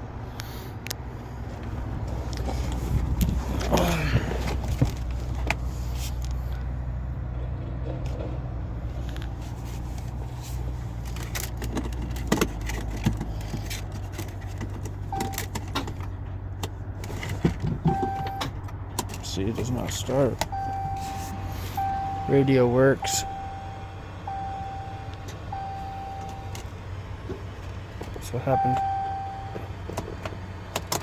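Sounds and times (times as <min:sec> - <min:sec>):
short electronic beeps: 0:17.9 - 0:18.5, 0:20.5 - 0:26.6, 0:28.5 - 0:29.7
steady low hum: 0:20.1 - 0:28.0.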